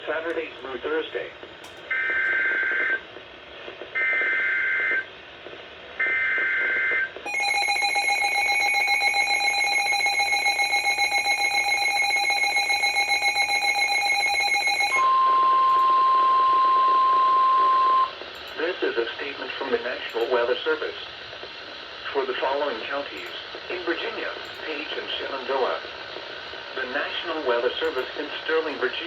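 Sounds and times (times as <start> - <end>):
harsh buzzy attention tone: 7.3 - 18.1
steady single warning tone: 7.3 - 18.1.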